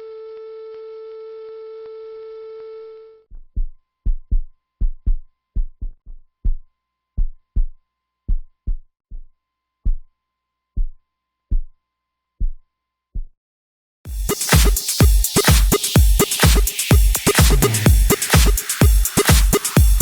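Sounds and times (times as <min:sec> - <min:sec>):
heartbeat thumps: 0:14.1 - 0:20.0.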